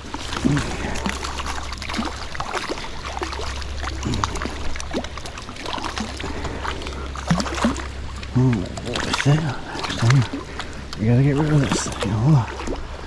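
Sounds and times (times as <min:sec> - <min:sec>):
fish splashing in water: 0:00.0 - 0:13.0
stream water running: 0:00.0 - 0:13.0.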